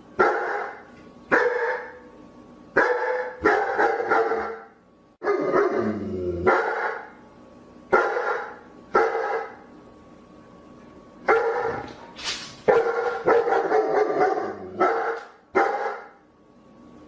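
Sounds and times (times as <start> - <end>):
dog barking: 0.2 - 2.0, 2.8 - 5.8, 6.5 - 7.1, 7.9 - 9.6, 11.3 - 11.9, 12.7 - 16.2.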